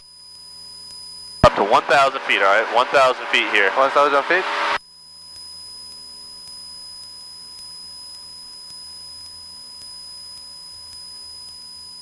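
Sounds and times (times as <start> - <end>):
electrical hum with high whine: 1.4 - 4.8.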